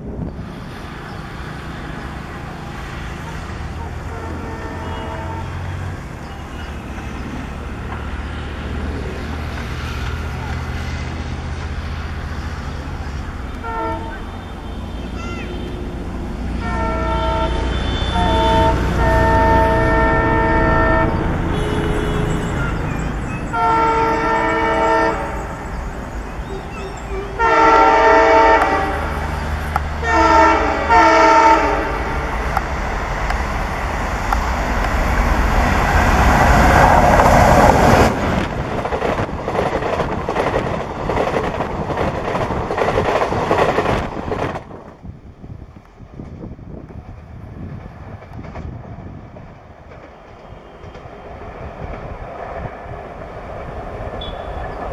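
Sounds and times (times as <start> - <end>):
train rumbling and clattering past: 0.0 - 54.9
locomotive horn blasts: 3.7 - 5.8, 13.5 - 22.8, 23.5 - 25.6, 27.1 - 29.2, 30.0 - 32.4, 54.2 - 54.7.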